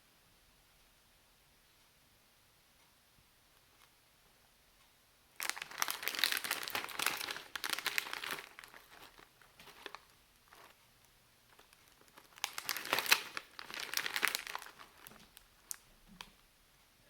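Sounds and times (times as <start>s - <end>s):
plastic snack bag crinkling: 5.4s - 10.8s, 11.5s - 16.4s.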